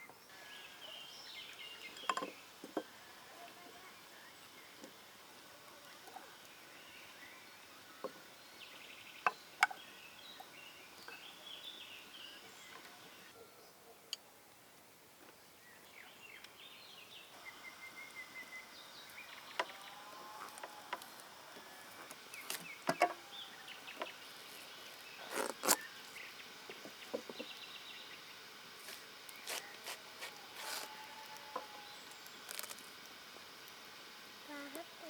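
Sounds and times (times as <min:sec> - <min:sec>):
faint insect hum: 0:00.0 - 0:35.0.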